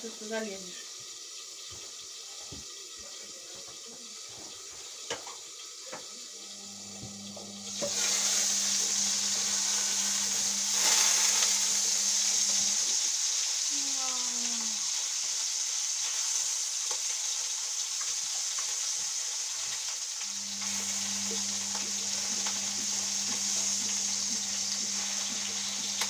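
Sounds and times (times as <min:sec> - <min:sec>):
steady low hum: 0:06.6 - 0:12.8, 0:20.3 - 0:26.0
water rushing in: 0:07.5 - 0:13.0, 0:20.2 - 0:26.0.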